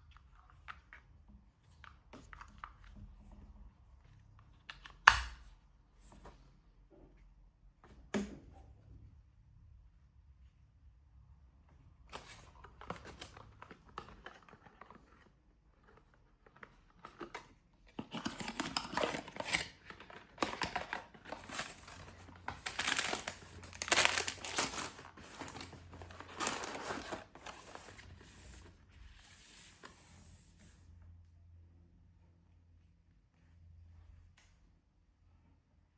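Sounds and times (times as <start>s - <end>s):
packaging crinkling and tearing: 18.0s - 28.2s.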